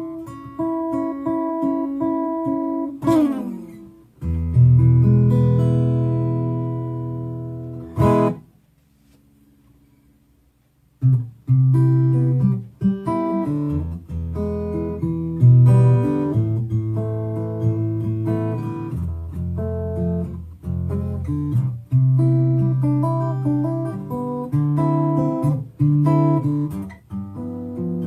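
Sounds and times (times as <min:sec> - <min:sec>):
acoustic guitar bass notes: 0:00.0 - 0:08.6, 0:10.8 - 0:28.0
picked guitar melody: 0:00.0 - 0:28.0.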